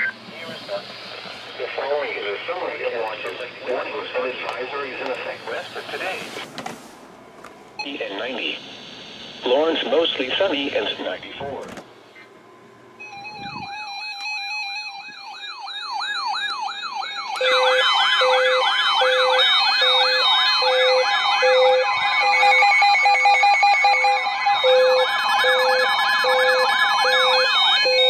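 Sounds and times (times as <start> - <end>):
electronic siren yelp: 13.0 - 28.0.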